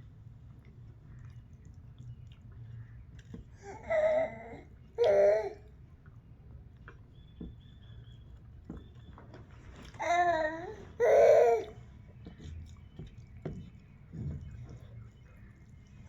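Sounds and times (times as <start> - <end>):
baby babbling: 3.6 - 5.7, 10.0 - 11.8.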